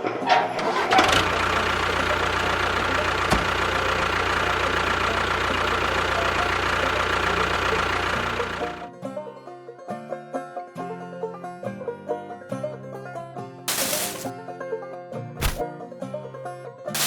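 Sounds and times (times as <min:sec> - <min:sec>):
engine idling: 0:00.6 - 0:08.9.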